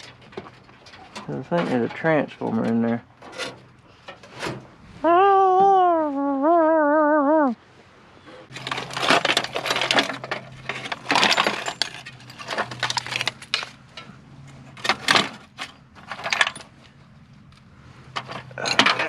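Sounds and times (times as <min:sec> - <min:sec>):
metal scrap clinking and clattering: 0:08.5 - 0:14.1, 0:14.7 - 0:16.8, 0:18.2 - 0:19.0.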